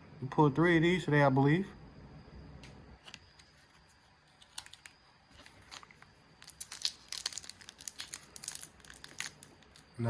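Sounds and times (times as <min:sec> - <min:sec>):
foil wrapper crinkling and tearing: 0:04.4 - 0:09.9.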